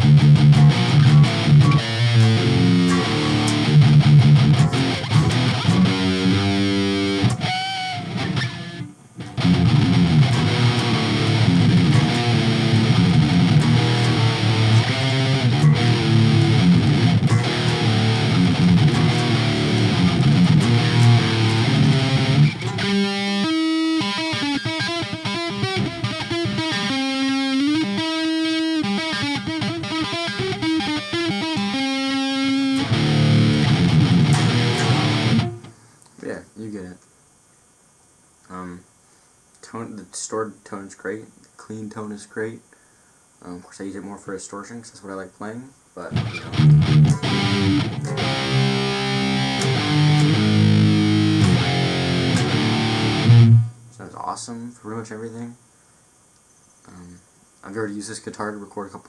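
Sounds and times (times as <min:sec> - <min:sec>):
distorted low guitar chords: 0:00.0 - 0:35.7, 0:46.1 - 0:53.9
electric guitar riff: 0:00.0 - 0:35.8, 0:46.1 - 0:53.9.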